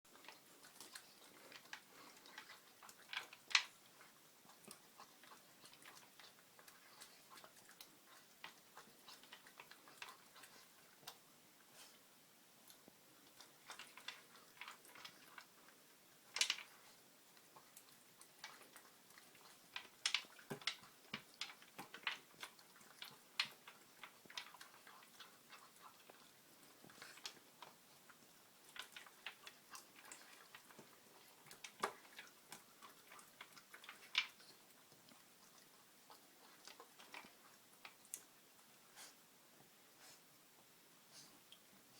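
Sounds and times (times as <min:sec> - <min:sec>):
kibble clicking against bowl: 0:13.2 - 0:15.5, 0:16.3 - 0:16.8, 0:17.4 - 0:38.3.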